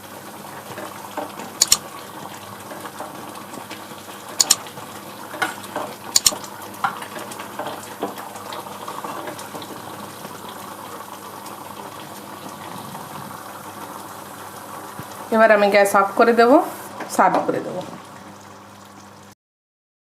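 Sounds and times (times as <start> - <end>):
lentils simmering and bubbling: 0.0 - 19.3.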